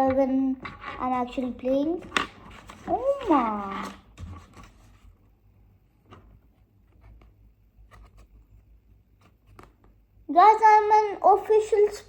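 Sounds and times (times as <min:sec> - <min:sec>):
quiet room hum: 0:00.0 - 0:12.0
paper rustling: 0:01.3 - 0:05.2.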